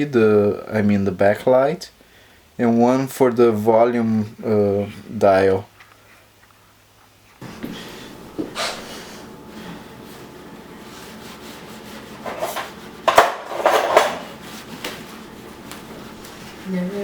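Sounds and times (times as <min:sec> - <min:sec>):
knocks and scrapes: 0:11.9 - 0:15.0.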